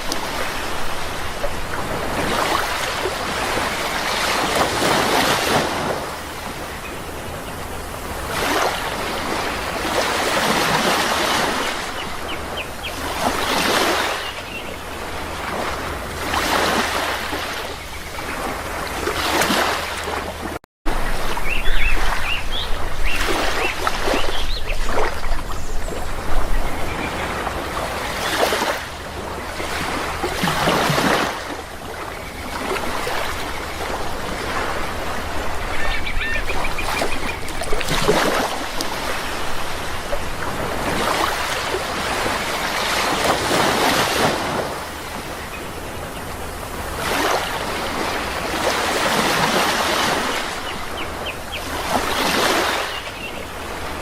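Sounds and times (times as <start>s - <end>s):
sea waves washing ashore: 0.0s - 54.0s
bird calls: 21.2s - 28.8s, 32.0s - 38.5s, 50.0s - 54.0s.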